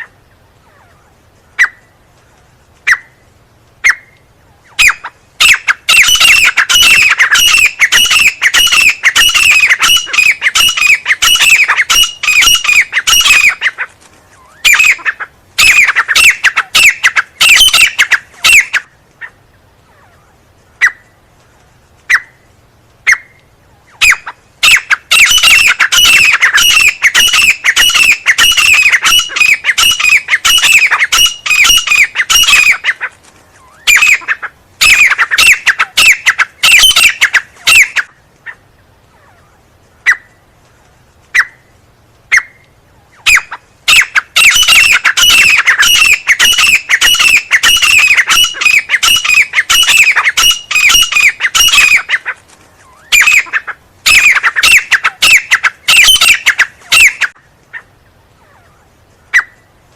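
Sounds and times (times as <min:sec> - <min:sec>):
francolin calling: 0:00.0 - 0:02.1, 0:02.8 - 0:21.3, 0:22.0 - 0:40.5, 0:42.3 - 0:59.8.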